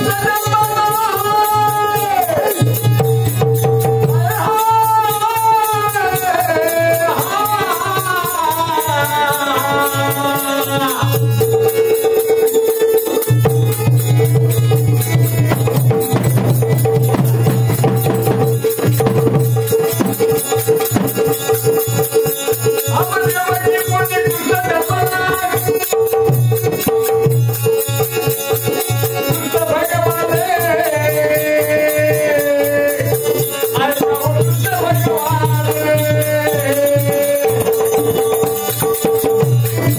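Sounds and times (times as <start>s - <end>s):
person singing folk song: 0.0s - 2.8s, 4.0s - 11.6s, 22.9s - 26.2s, 29.3s - 38.6s
hand percussion: 0.0s - 39.9s.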